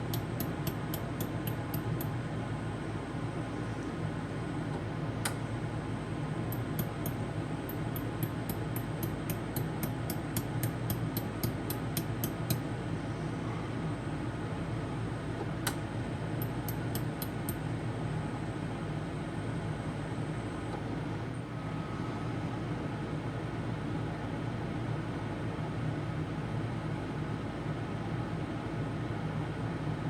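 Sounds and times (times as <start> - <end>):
laser welder ticking: 0.0 - 2.2, 6.5 - 12.6, 16.4 - 17.6
steady low hum: 0.0 - 25.2.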